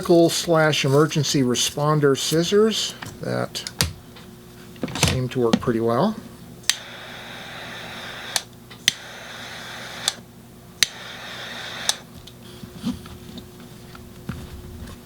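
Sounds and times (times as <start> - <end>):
quiet handling: 0.0 - 6.4.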